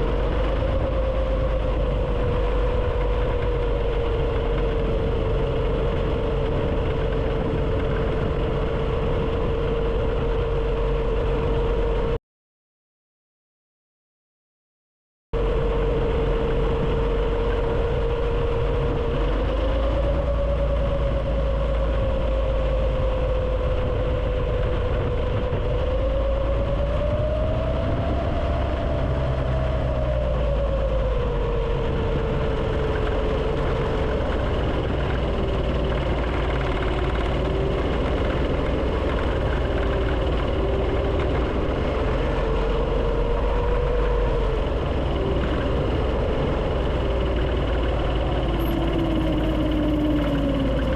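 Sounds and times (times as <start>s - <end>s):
low rumble: 0.0s - 12.2s, 15.4s - 50.9s
go-kart engine revving: 26.6s - 50.9s.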